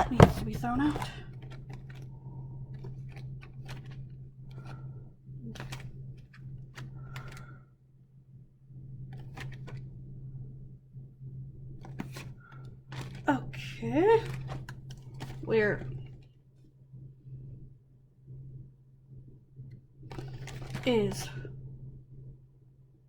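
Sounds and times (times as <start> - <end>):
containers clicking and knocking: 0.0 - 2.0
steady low hum: 0.0 - 23.0.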